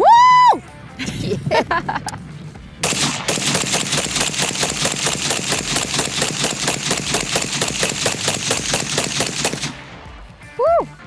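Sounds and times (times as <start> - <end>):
automatic gunfire: 2.8 - 10.3.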